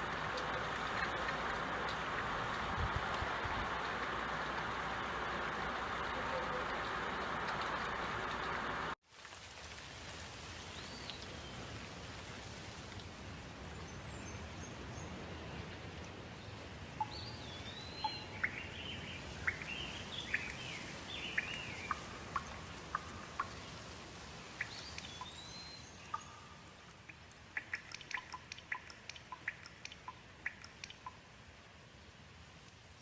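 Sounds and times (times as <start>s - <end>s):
birds chirping: 0.0s - 9.0s, 17.0s - 23.8s, 24.6s - 26.9s
sharp drip-like ticks: 0.0s - 13.2s, 15.6s - 31.6s, 32.6s - 32.8s
steady rain: 0.0s - 33.0s.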